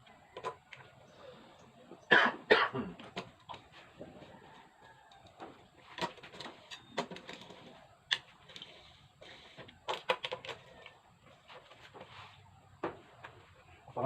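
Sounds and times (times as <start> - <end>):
hand tools and metal parts clinking: 3.2 - 11.0.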